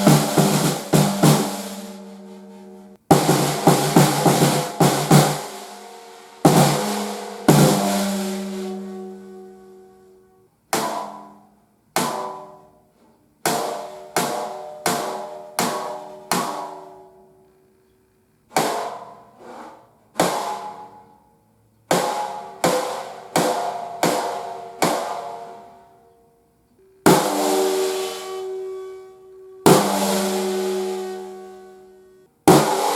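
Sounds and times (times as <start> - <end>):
snare drum hits: 0.0 - 2.5, 3.1 - 8.8, 29.7 - 30.7, 32.5 - 32.9.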